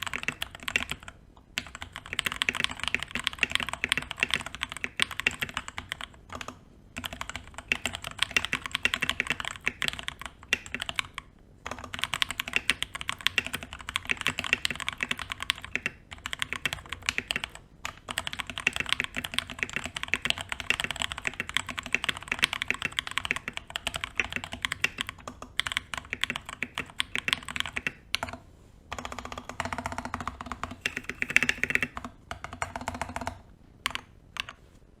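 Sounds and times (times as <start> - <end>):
mechanical keyboard typing: 0.0 - 34.6.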